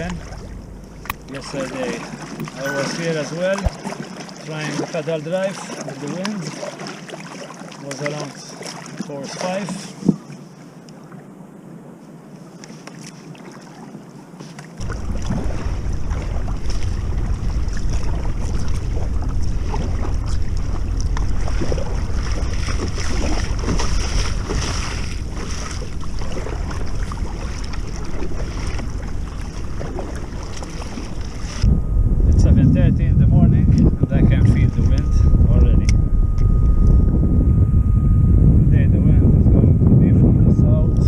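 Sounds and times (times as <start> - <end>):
wind buffeting microphone: 0.0 - 4.1, 14.8 - 41.0
water lapping against hull: 0.0 - 35.9.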